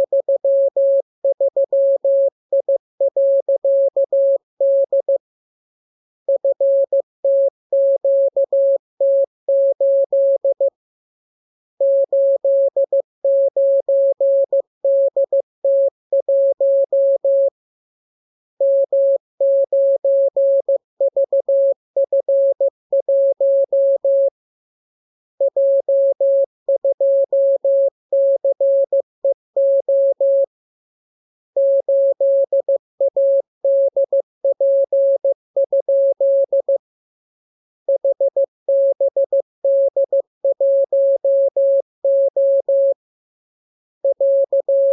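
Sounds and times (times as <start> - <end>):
morse code tone: 44.0 - 44.9.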